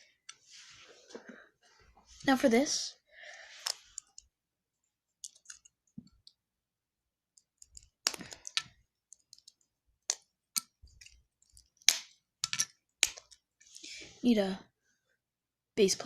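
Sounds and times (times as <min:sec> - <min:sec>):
plastic bricks clicking and clattering: 0:05.2 - 0:06.4, 0:07.4 - 0:13.4.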